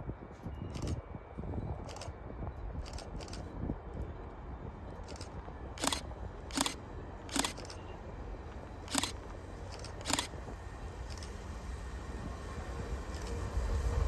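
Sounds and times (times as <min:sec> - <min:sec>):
low outdoor rumble: 0:00.0 - 0:14.0
sharp clicks: 0:00.8 - 0:01.0, 0:02.8 - 0:03.4, 0:05.1 - 0:07.8, 0:08.9 - 0:10.3, 0:11.1 - 0:11.3, 0:13.1 - 0:13.4.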